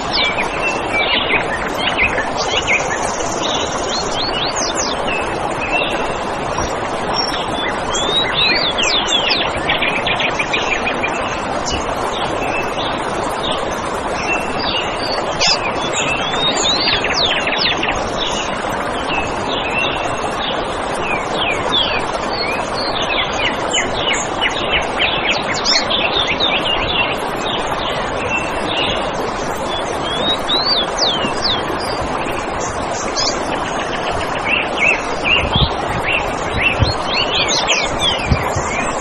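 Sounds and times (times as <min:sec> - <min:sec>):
birds chirping and whistling: 0:00.0 - 0:06.2, 0:07.1 - 0:11.8, 0:14.2 - 0:18.5, 0:21.4 - 0:27.2, 0:29.7 - 0:39.0
steady rushing background noise: 0:00.0 - 0:39.0.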